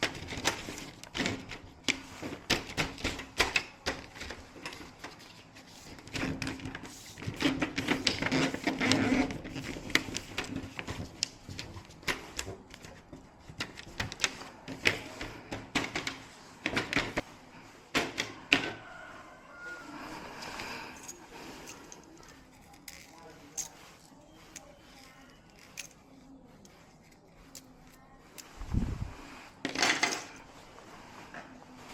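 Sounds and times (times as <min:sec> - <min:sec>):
small tools clicking and tapping: 0:20.4 - 0:28.6.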